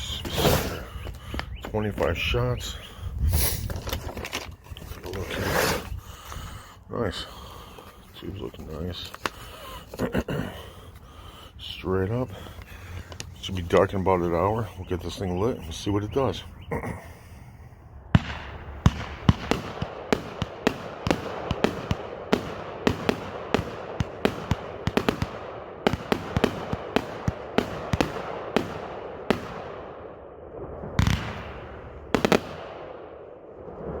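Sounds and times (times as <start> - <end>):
fireworks hiss: 2.6 - 3.8
loud fireworks bangs: 18.1 - 29.8, 31.0 - 33.0
fireworks shots firing: 18.1 - 34.0.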